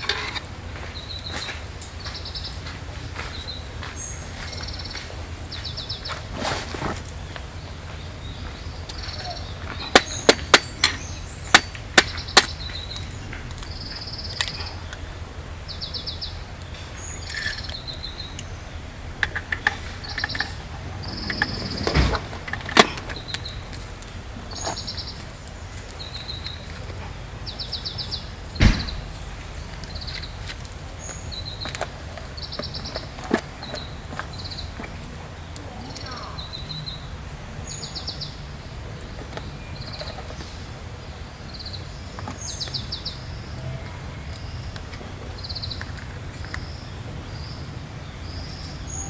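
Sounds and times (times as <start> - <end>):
small birds trilling: 0.0 - 49.0
sharp knocks: 28.6 - 29.1.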